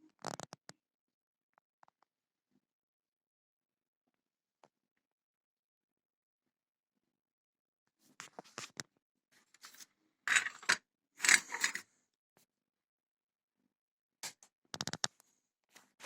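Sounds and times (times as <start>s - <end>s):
metal parts clicking and clattering: 10.3s - 11.8s.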